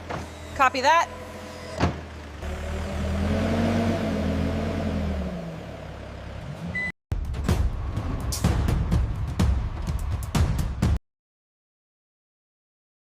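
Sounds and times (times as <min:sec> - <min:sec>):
vehicle engine revving: 0:00.4 - 0:06.9.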